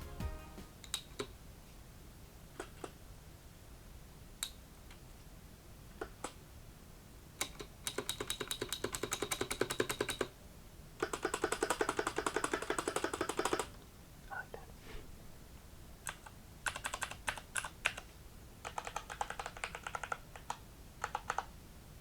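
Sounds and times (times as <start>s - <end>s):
clicky mechanical keyboard keystrokes: 7.4s - 10.3s, 16.1s - 21.5s.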